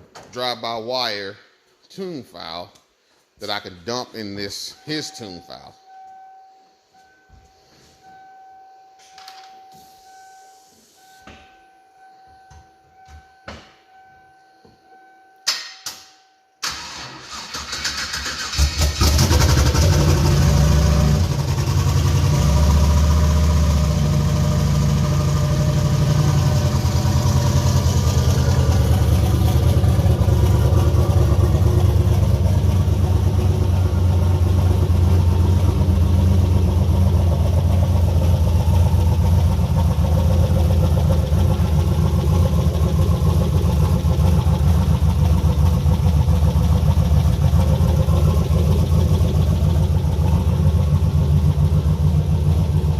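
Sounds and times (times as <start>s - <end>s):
car engine idling: 18.8s - 52.9s.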